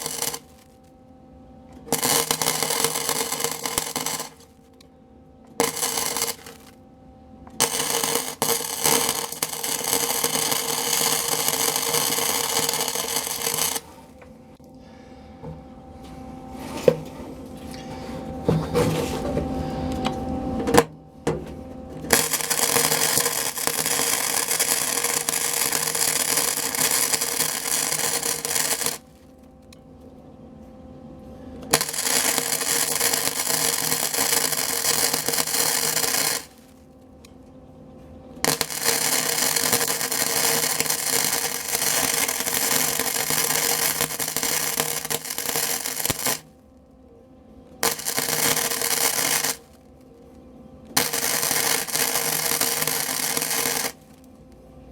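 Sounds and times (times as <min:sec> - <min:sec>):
arc welder crackling: 0:00.0 - 0:00.9, 0:01.7 - 0:04.8, 0:05.5 - 0:06.8, 0:07.5 - 0:14.3, 0:22.0 - 0:29.3, 0:31.6 - 0:36.8, 0:38.4 - 0:46.6, 0:47.7 - 0:49.9, 0:50.9 - 0:54.4.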